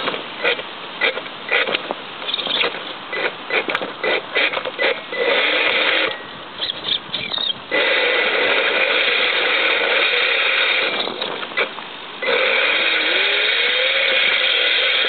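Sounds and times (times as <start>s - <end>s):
clicks and scrapes: 0.0s - 6.2s
electric motor whining: 0.0s - 6.2s, 7.2s - 15.0s.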